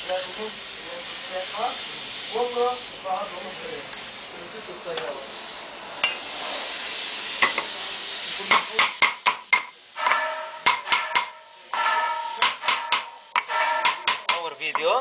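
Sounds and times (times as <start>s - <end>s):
steady hiss: 0.0s - 15.0s
ringing metal-on-metal strikes: 9.6s - 15.0s.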